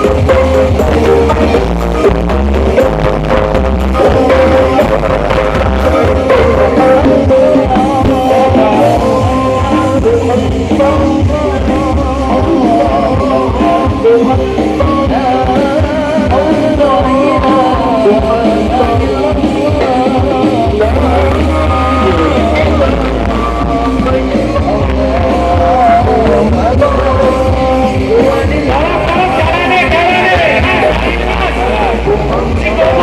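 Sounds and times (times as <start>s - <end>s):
loud music with heavy bass: 0.0s - 33.0s.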